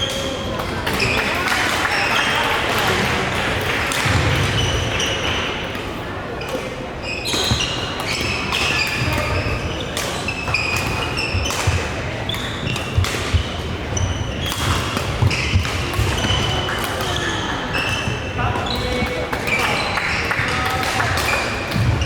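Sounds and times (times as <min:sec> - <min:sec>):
shoes squeaking on court floor: 0:06.4 - 0:22.0.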